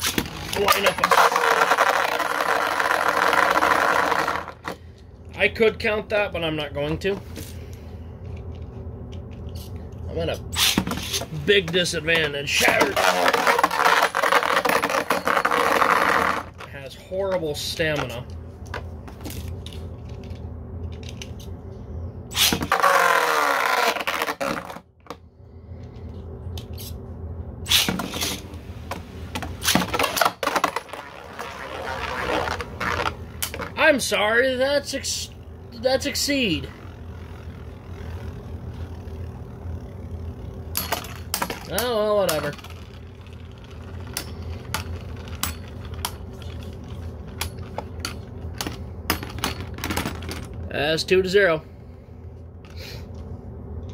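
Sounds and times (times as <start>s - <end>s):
steady low hum: 0.0s - 53.9s
loud launcher whir: 22.3s - 24.0s, 27.6s - 28.5s.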